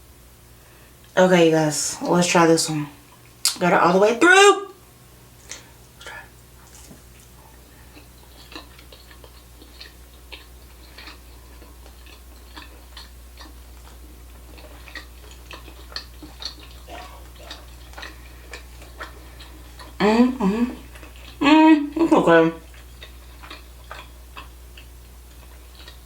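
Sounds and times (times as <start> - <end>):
steady low hum: 0.0 - 26.0
wet chewing mouth clicks: 5.4 - 20.0, 20.8 - 21.4, 22.6 - 26.0.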